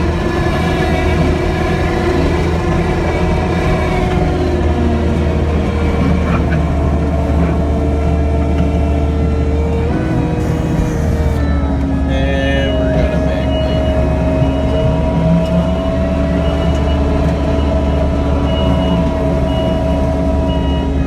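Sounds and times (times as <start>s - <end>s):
diesel engine running: 0.0s - 21.0s.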